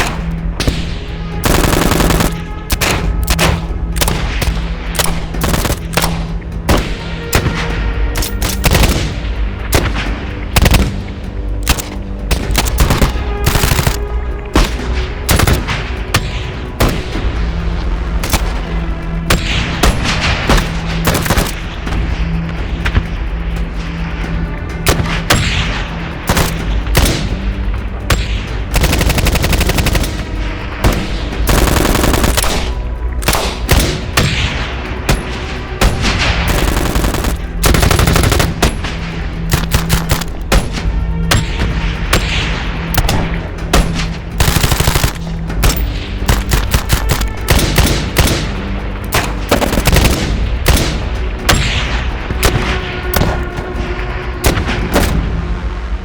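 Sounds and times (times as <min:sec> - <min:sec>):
automatic gunfire bursts: 0:01.4 - 0:06.2, 0:11.6 - 0:14.1, 0:21.1 - 0:21.6, 0:28.8 - 0:30.2, 0:31.5 - 0:34.0, 0:36.5 - 0:38.6, 0:39.5 - 0:40.5, 0:44.4 - 0:48.5, 0:49.2 - 0:51.0.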